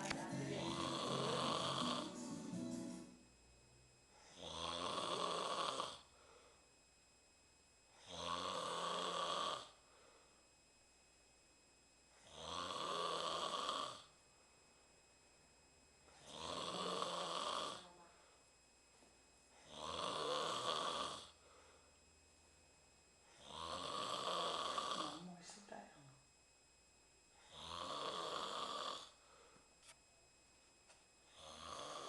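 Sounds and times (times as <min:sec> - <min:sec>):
woman snoring: 0:00.0 - 0:02.5, 0:04.2 - 0:06.2, 0:08.0 - 0:09.8, 0:12.2 - 0:14.2, 0:16.1 - 0:18.2, 0:19.6 - 0:21.4, 0:23.3 - 0:25.4, 0:27.4 - 0:29.3, 0:31.3 - 0:32.0.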